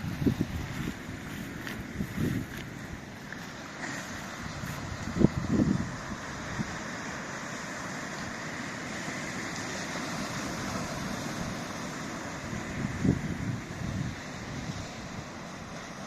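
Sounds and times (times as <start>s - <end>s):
wind buffeting thumps: 0.0s - 3.1s
wind rushing over microphone: 0.0s - 7.4s, 9.8s - 16.0s.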